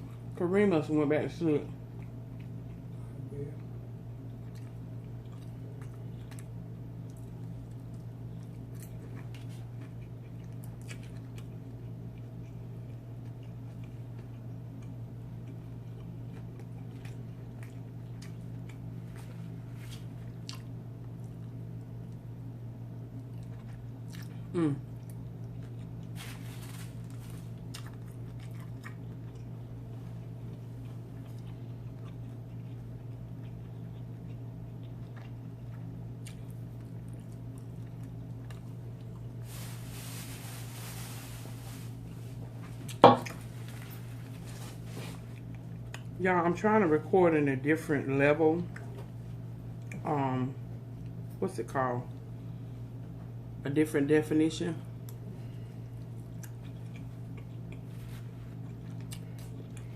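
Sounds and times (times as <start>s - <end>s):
steady low hum: 0.0s - 59.9s
person chewing food: 3.6s - 22.3s, 23.0s - 46.2s, 55.0s - 59.9s.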